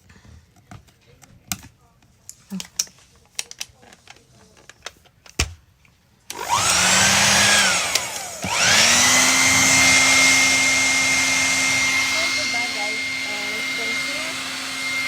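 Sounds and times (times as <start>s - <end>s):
hair dryer motor whine: 6.3s - 15.0s
hair dryer rushing air: 6.3s - 15.0s.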